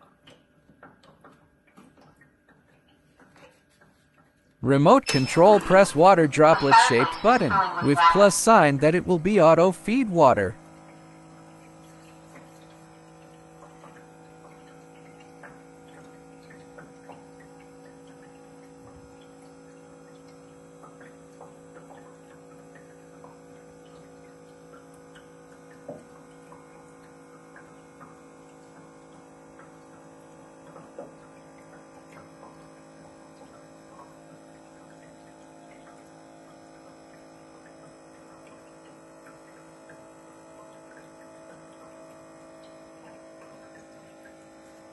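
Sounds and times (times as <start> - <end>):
electric fireplace pump humming: 0.0 - 44.9
faint clicks and ticks: 10.7 - 44.9.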